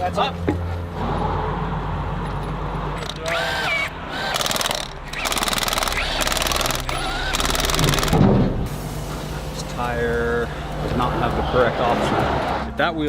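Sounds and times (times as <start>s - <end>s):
truck engine idling: 2.9s - 12.9s
impact wrench hammering: 3.0s - 8.4s.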